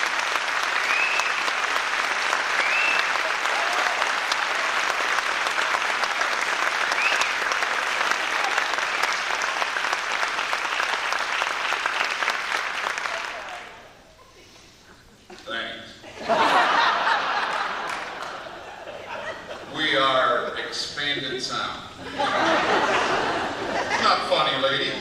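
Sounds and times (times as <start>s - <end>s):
audience applauding: 0.0s - 13.9s, 16.4s - 19.4s.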